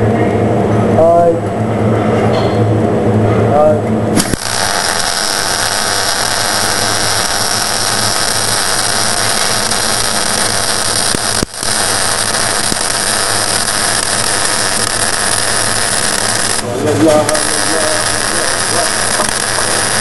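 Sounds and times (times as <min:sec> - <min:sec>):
welding arc hissing and crackling: 0:04.1 - 0:20.0.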